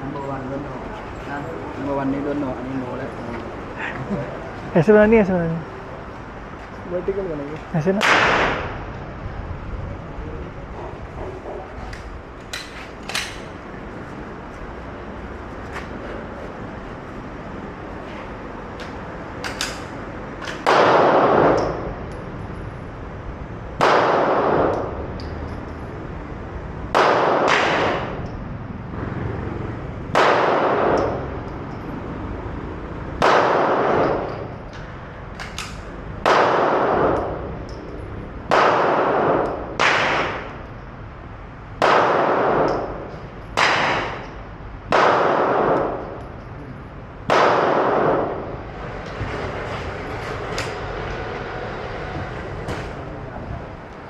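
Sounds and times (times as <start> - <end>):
gunshots with ringing echo: 8.0 - 8.9, 20.5 - 21.9, 23.8 - 24.9, 26.9 - 28.2, 30.1 - 31.2, 33.2 - 34.3, 35.6 - 37.5, 38.5 - 40.6, 41.8 - 46.1, 47.2 - 48.6.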